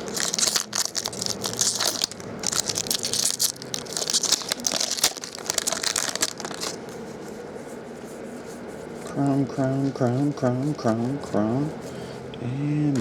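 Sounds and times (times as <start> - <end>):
wrapper crinkling: 0.0 - 7.1.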